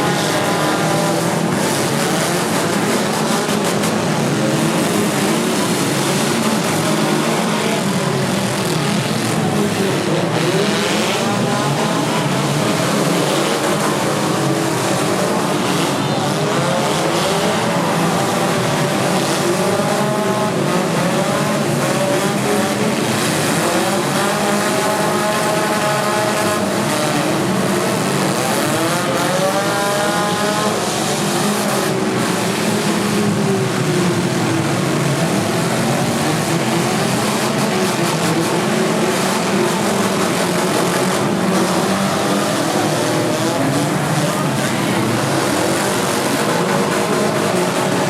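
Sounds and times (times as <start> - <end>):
car engines revving: 0.0 - 48.0.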